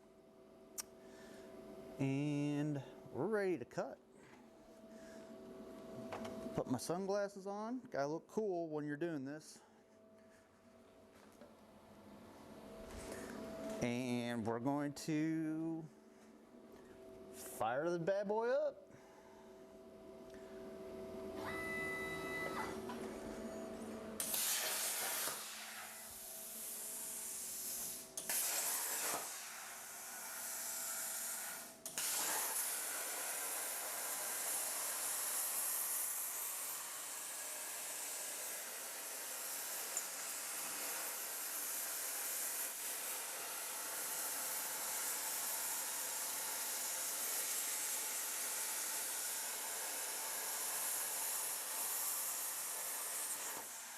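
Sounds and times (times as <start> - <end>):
short tone: 21.4 - 23.9
plasma cutter torch hissing: 24.2 - 53.9.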